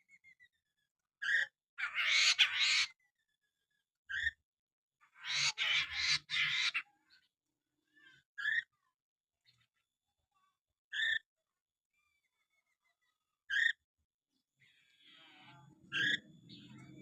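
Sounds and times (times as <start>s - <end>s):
harsh rasping bird chattering: 1.2s - 3.0s, 5.1s - 6.9s.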